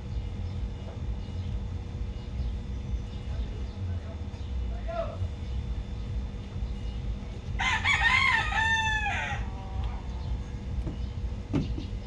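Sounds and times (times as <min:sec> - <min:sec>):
low steady rumble: 0:00.0 - 0:12.0
rooster crowing: 0:07.5 - 0:10.3.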